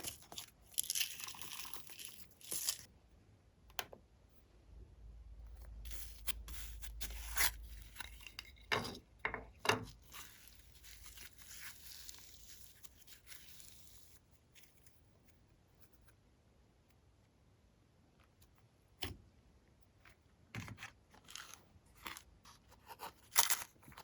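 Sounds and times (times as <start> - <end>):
slime crackly rustling: 0.0 - 2.9, 10.0 - 14.2.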